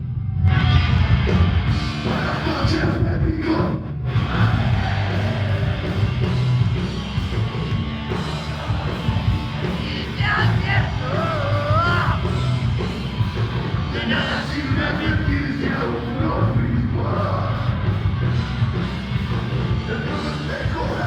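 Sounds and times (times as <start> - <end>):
live rock band playing: 0.3 - 21.0
person singing: 8.6 - 12.6.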